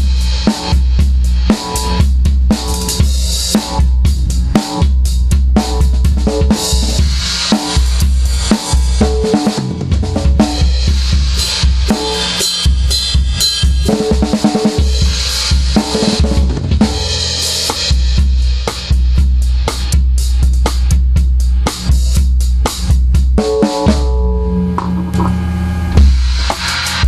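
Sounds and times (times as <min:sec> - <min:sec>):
drum kit playing a beat: 0:00.0 - 0:27.0
heavy sustained bass: 0:24.0 - 0:27.0.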